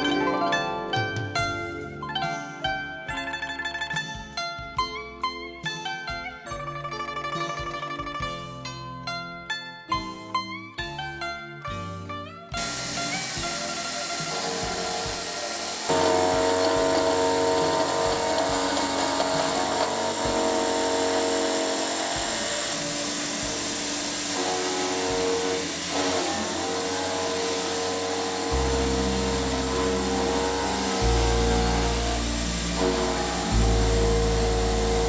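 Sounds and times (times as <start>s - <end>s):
steady hiss: 12.6s - 35.0s
sustained chords: 12.6s - 35.0s
deep bass: 27.8s - 35.0s.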